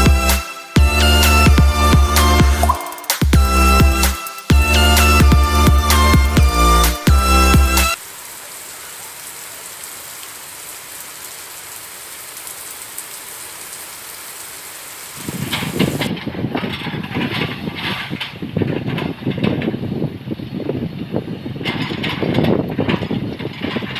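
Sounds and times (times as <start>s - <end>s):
steady hiss: 5.9s - 16.1s
excavator clattering and crunching: 15.5s - 19.9s, 21.6s - 23.9s.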